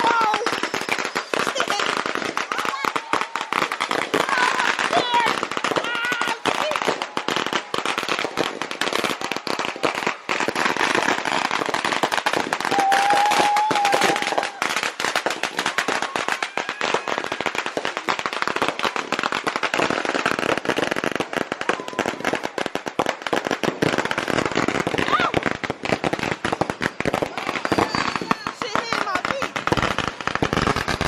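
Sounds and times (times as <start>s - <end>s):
firecrackers popping: 0.0s - 31.0s
firework whistle: 12.5s - 17.8s.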